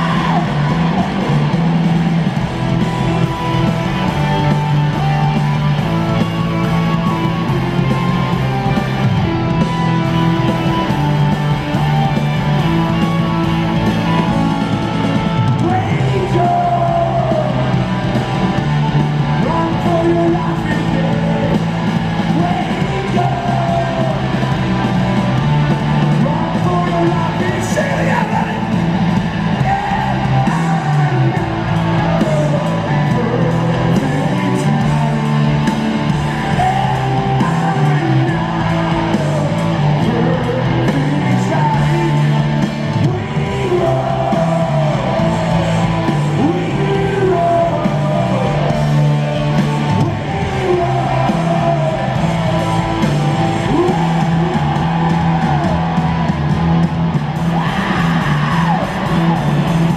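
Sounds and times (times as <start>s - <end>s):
rock band playing: 0.0s - 59.9s
voices singing or yelling: 0.0s - 59.9s.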